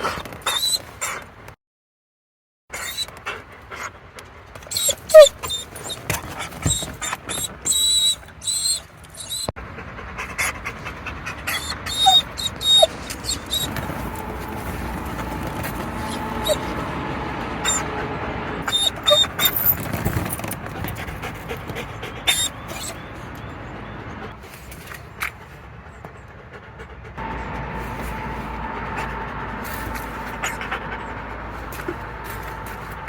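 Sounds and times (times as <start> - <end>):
dog whimpering: 0.0 - 1.2, 2.8 - 3.4, 4.7 - 9.6, 10.2 - 18.0, 18.6 - 20.5, 21.5 - 23.1, 28.2 - 32.5.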